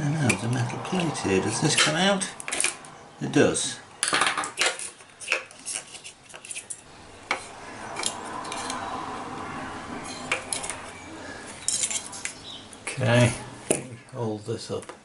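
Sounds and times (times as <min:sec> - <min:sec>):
scraping and rustling: 0:04.2 - 0:12.4.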